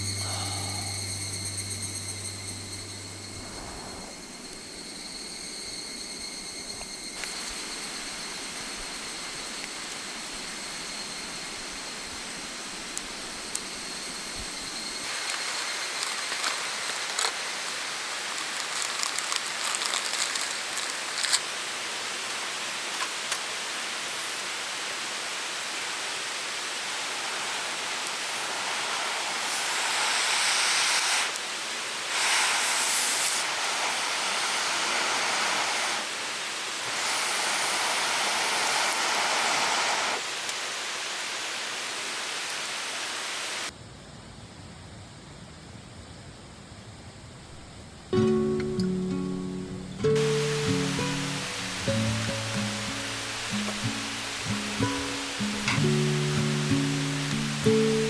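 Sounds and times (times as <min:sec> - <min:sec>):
river water rushing: 0:50.1 - 0:58.0.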